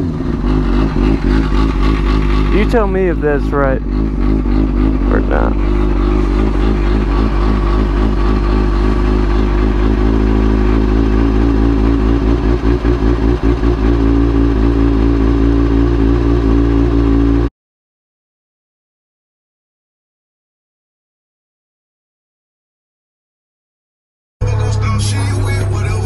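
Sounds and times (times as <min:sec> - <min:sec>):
motorcycle engine running: 0:00.0 - 0:17.5, 0:24.4 - 0:26.0.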